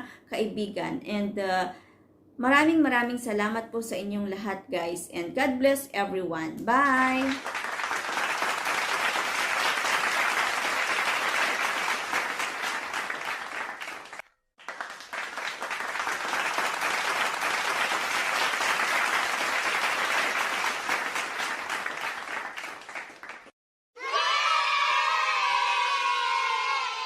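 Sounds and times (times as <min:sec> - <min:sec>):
applause: 0:06.8 - 0:23.6.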